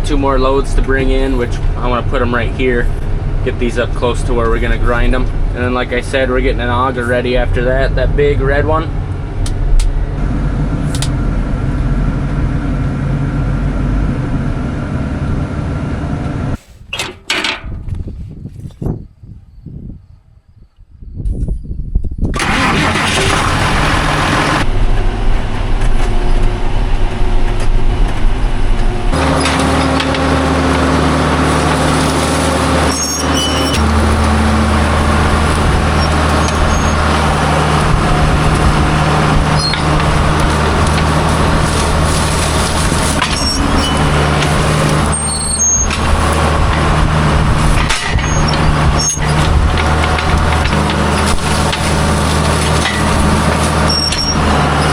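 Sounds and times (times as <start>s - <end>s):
farm machine engine under load: 0.0s - 18.7s, 22.3s - 54.9s
short clanks: 16.6s - 18.9s, 47.7s - 54.9s.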